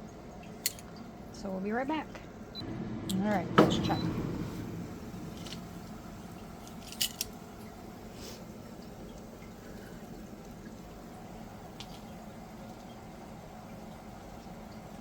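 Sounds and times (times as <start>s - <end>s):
steady low hum: 0.0s - 15.0s
light clicks and taps of utensils: 0.3s - 1.2s, 6.6s - 10.9s, 11.6s - 15.0s.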